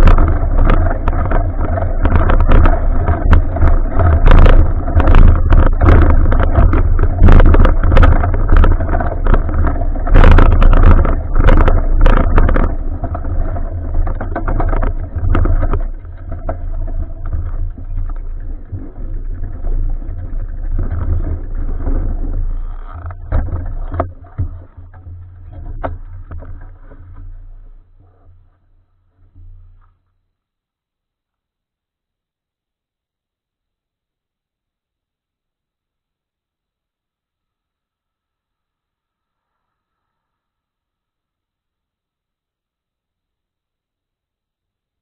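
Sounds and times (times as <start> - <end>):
wind buffeting microphone: 0.0 - 28.5
bicycle knocks and rattles: 0.0 - 30.0.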